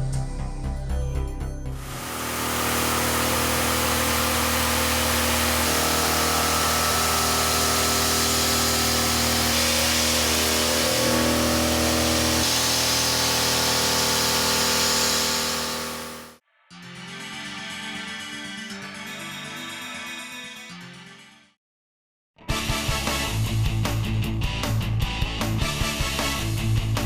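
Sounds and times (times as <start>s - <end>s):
end mill cutting metal: 1.8s - 16.4s.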